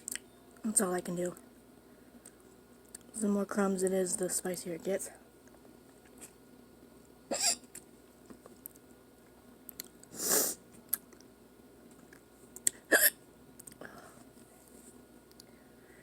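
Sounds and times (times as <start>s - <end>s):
person hiccuping: 7.3s - 7.7s, 12.9s - 13.2s.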